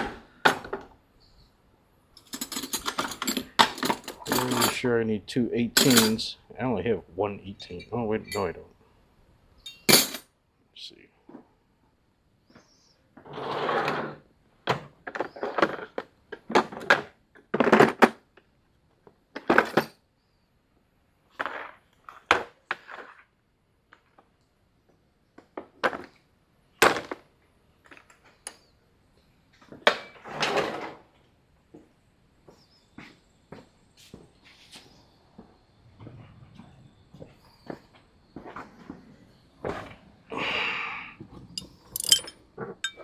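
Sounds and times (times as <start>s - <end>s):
metal hand tools clinking: 2.2s - 4.8s, 5.8s - 6.2s, 9.7s - 10.2s, 41.6s - 43.0s.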